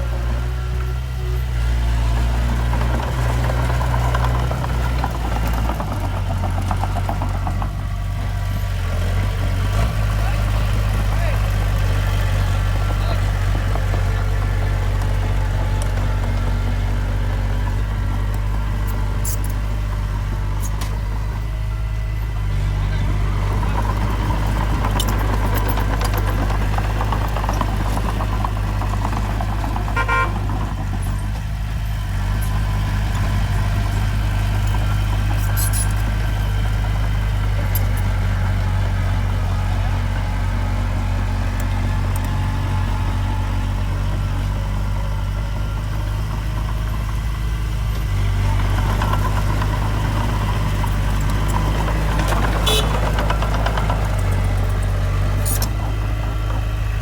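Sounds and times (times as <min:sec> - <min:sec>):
heavy diesel engine running: 0:00.0 - 0:57.0
short clanks: 0:22.9 - 0:39.4, 0:46.2 - 0:57.0.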